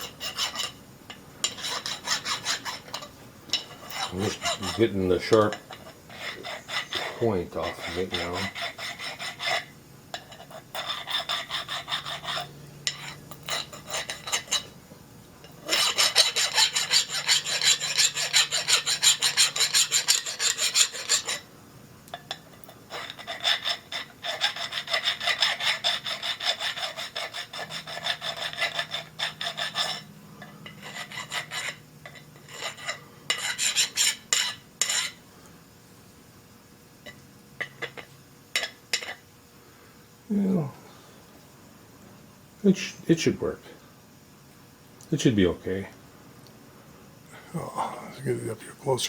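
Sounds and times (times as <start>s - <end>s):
file stroking on metal: 0.0s - 0.8s, 1.4s - 14.8s, 15.6s - 21.5s, 22.6s - 35.2s.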